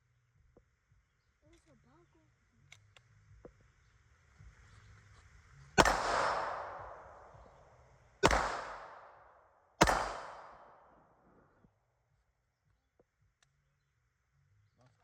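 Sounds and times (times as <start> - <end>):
pistol shots with echo: 5.8 - 11.1.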